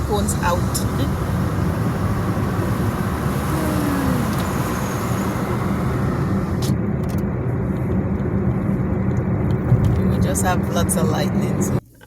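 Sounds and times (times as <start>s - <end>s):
car interior road rumble: 0.0s - 12.0s.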